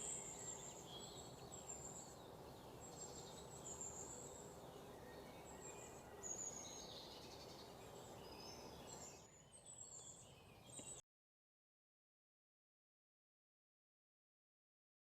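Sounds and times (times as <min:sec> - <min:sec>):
faint birds chirping: 0:00.0 - 0:11.0.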